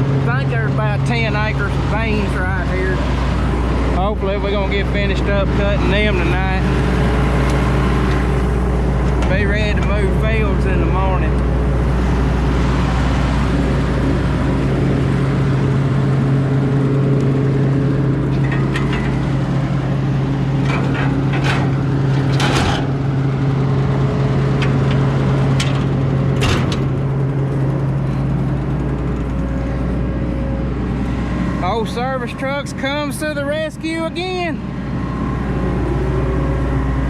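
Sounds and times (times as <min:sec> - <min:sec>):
engine droning: 0:00.0 - 0:37.0.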